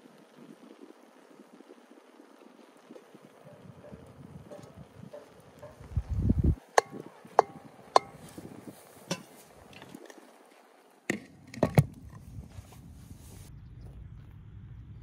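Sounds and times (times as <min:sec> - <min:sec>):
utensils clinking on cookware: 0:06.8 - 0:08.4, 0:09.1 - 0:09.4.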